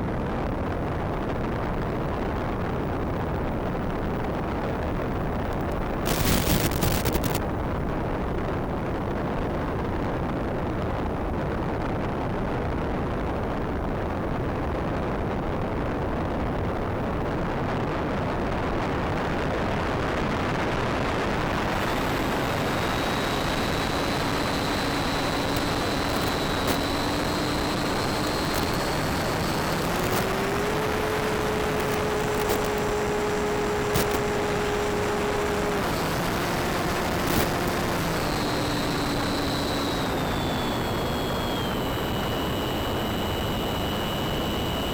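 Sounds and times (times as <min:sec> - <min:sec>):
wind rush of model plane: 0:00.1 - 0:44.9
electric motor whine: 0:05.5 - 0:07.4, 0:21.4 - 0:44.9.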